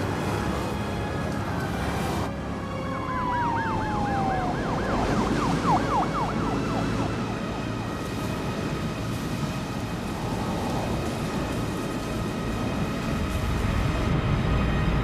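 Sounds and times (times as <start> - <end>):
falling siren tone: 1.8 - 8.8
siren yelping: 2.6 - 8.0.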